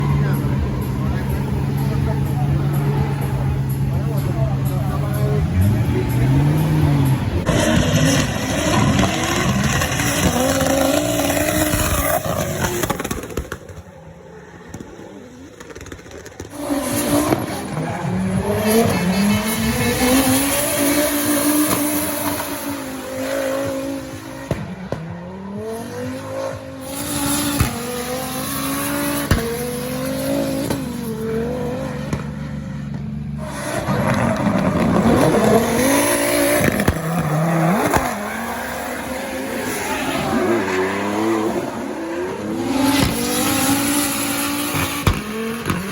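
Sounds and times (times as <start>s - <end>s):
car engine revving: 0.0s - 45.9s.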